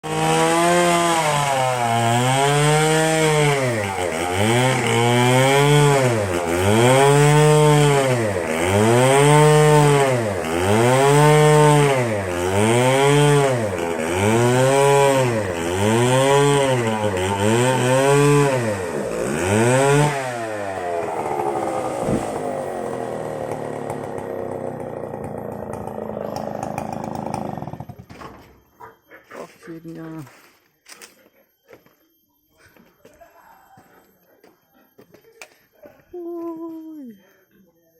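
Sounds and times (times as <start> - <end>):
chainsaw engine revving: 0.0 - 28.0.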